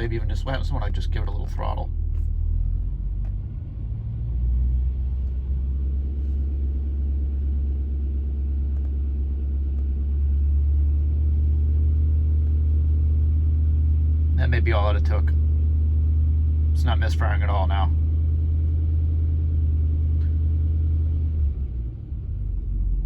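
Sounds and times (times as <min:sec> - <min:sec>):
vee eight engine running: 0:00.0 - 0:18.4.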